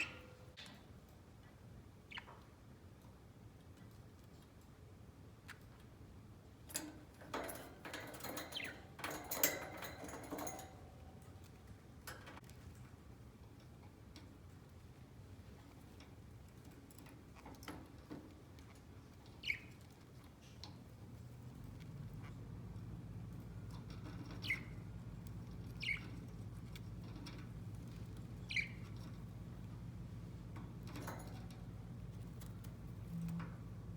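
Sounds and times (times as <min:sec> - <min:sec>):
steady low hum: 0:06.5 - 0:33.9
budgerigar chirping: 0:25.8 - 0:26.1, 0:28.4 - 0:28.9.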